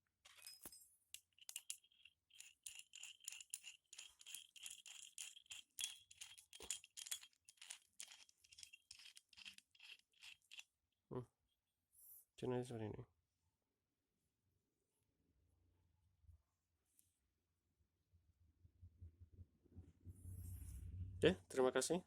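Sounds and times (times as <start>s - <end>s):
metal parts scraping and clinking: 0.2s - 10.7s.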